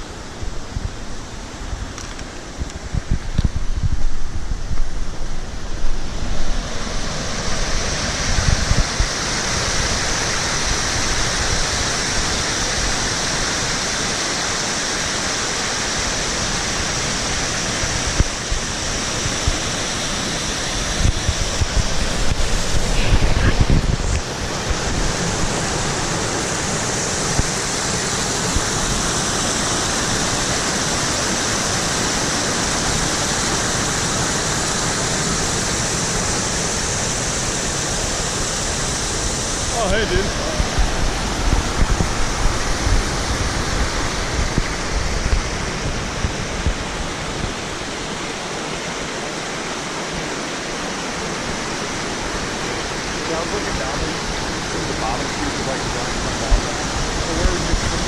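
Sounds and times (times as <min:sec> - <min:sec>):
waterfall rushing: 0:00.0 - 0:58.0
low rumbles: 0:20.8 - 0:26.0.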